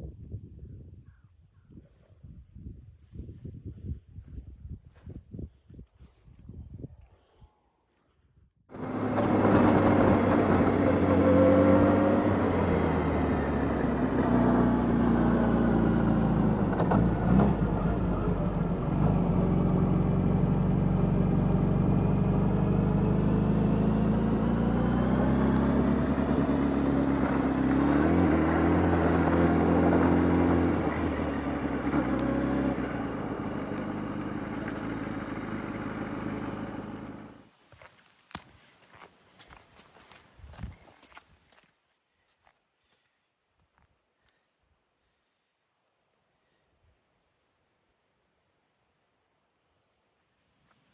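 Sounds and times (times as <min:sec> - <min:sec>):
motorcycle engine running: 0:08.7 - 0:37.4.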